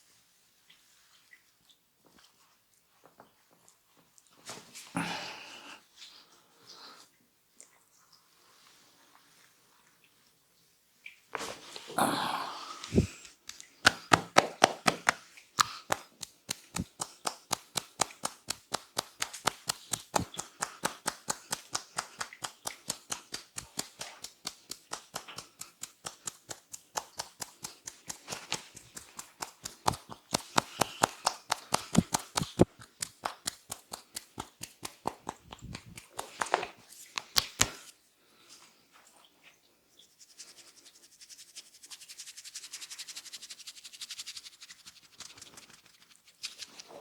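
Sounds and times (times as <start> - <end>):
hands slapping a head: 12.8 - 37.9.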